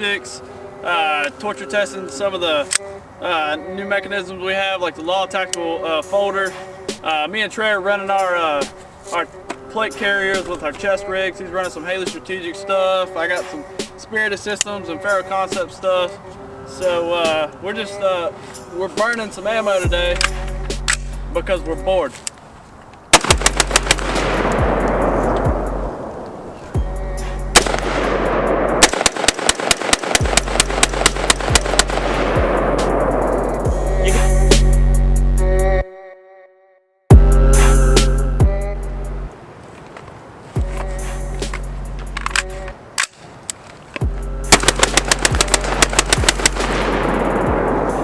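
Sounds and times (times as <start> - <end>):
hip hop beat with deep bass: 6.4 - 7.1, 8.2 - 14.1, 15.0 - 22.0, 23.3 - 25.9, 26.7 - 28.7, 30.2 - 36.1, 37.1 - 39.3, 40.6 - 42.8, 44.0 - 48.0
rapid rifle fire: 23.2 - 25.4, 27.6 - 33.4, 44.5 - 48.0.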